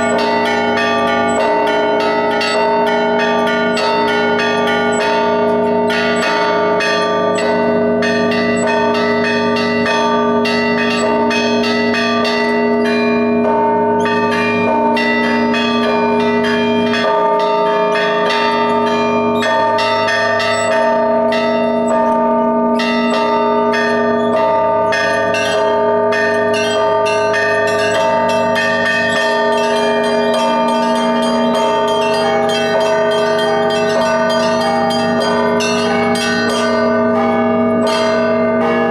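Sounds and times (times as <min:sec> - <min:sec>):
deep bells ringing: 0:00.0 - 0:38.9
small bells struck rhythmically: 0:00.0 - 0:38.9.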